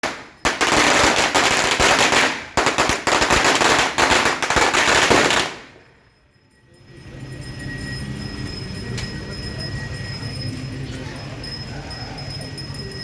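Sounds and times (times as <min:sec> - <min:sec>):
firecrackers popping: 0:00.0 - 0:05.9.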